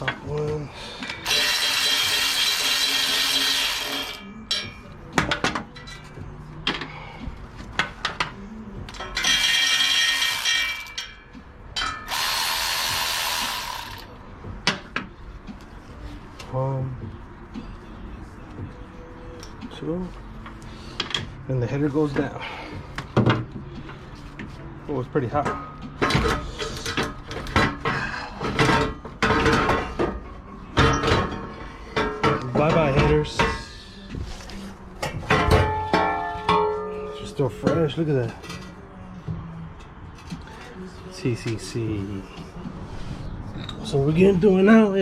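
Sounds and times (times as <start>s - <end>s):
power tool whining: 1.2s - 4.2s, 12.1s - 14.1s
metal clanks and knocks of exhaust: 25.3s - 33.9s, 35.0s - 38.7s.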